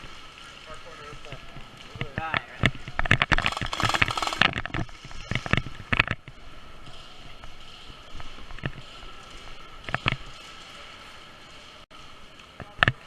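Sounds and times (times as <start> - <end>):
airsoft guns firing: 3.3 - 4.9.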